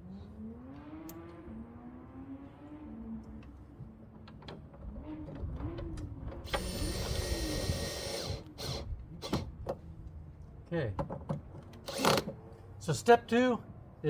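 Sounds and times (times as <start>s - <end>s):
cordless drill driving a screw: 6.5s - 9.5s, 11.8s - 12.3s.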